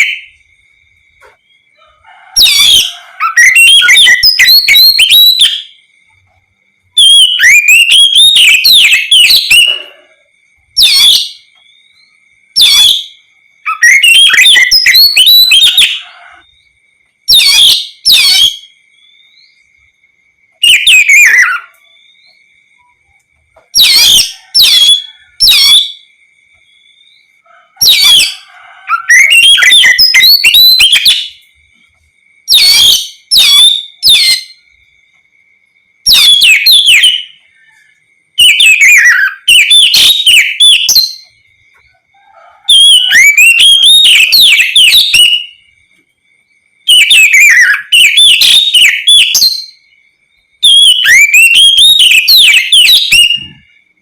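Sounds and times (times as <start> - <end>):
bird singing whistles: 2.4 - 5.8, 7.0 - 10.1, 10.8 - 16.5, 17.3 - 19.7, 20.6 - 23.0, 27.8 - 31.4, 32.5 - 34.6, 36.1 - 37.8, 38.4 - 41.4, 42.7 - 45.6, 46.9 - 49.9, 50.6 - 53.7.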